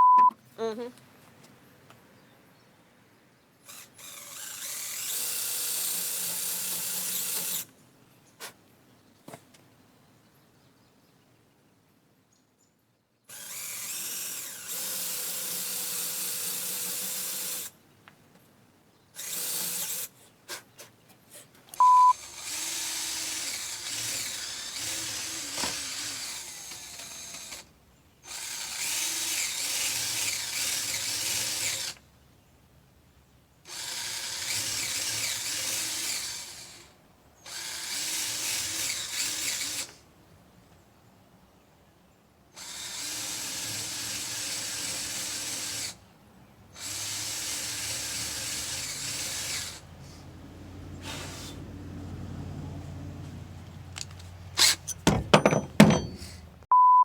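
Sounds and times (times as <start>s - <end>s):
short loud beep: 0.0s - 0.3s, 21.8s - 22.2s, 56.7s - 57.0s
power drill boring into wood: 3.7s - 7.7s, 13.3s - 17.7s, 19.2s - 20.1s, 21.8s - 27.7s, 28.3s - 32.0s, 33.7s - 36.9s, 37.5s - 40.0s, 42.6s - 46.0s, 46.8s - 49.8s.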